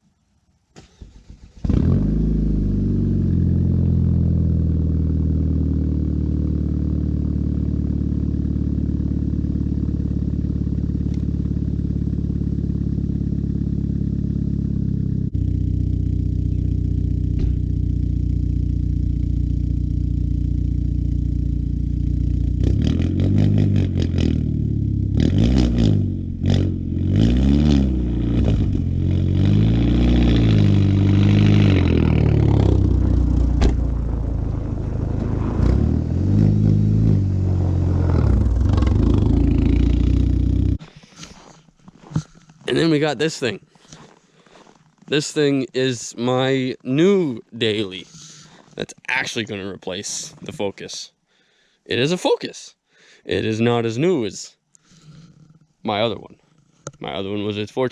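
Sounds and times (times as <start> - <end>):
engine revving: 0.8 - 40.8
car exhaust idling: 1.8 - 40.9.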